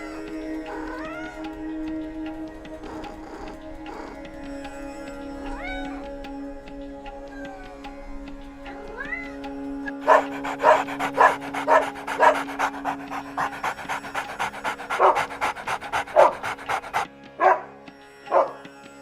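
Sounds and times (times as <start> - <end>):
background music: 0.0 - 19.0
dog panting: 9.9 - 18.6.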